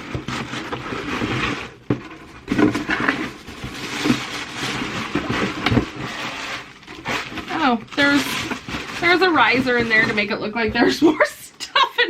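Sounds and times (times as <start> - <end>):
packaging rustling: 0.0 - 11.4.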